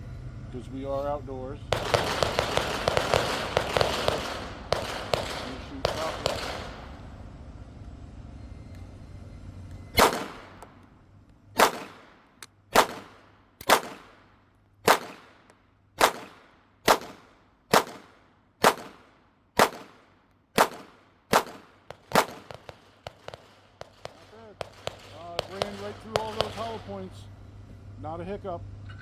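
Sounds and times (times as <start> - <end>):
pistol shots: 1.7 - 7.2, 10.0 - 10.9, 11.6 - 27.0.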